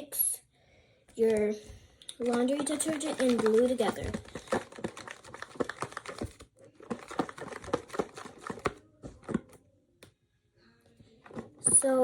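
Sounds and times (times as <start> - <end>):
pencil tapping against bowl: 1.2 - 9.5.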